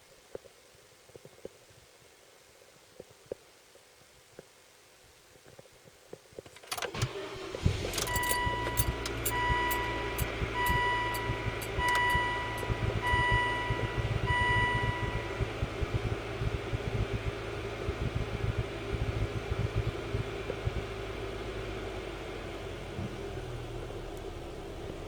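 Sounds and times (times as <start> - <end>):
car engine starting and idling: 6.5 - 25.0
dashboard warning chime beeping: 7.8 - 16.0.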